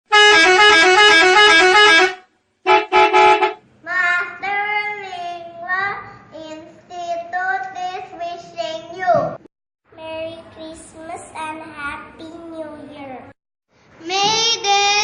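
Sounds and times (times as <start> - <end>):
multi-tone bus horn tune: 0.1 - 3.6.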